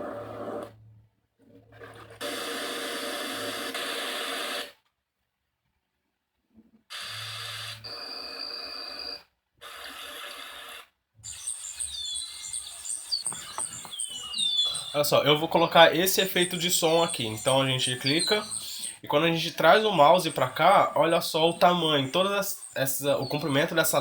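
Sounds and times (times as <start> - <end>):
birds chirping: 11.2 - 24.0
rushing outdoor ambience: 11.7 - 24.0.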